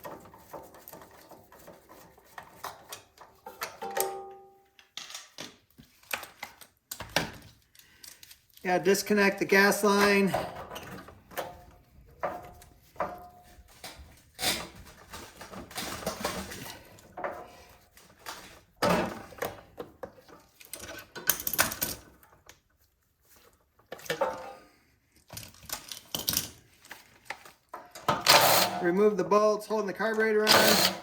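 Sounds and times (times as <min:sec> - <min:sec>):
metal parts clinking and rattling: 0:20.3 - 0:22.3, 0:25.2 - 0:28.7.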